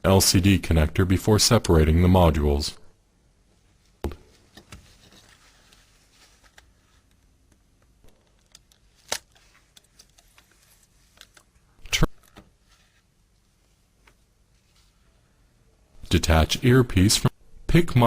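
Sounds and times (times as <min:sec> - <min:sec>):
plastic phone parts clicking: 0:07.5 - 0:11.5.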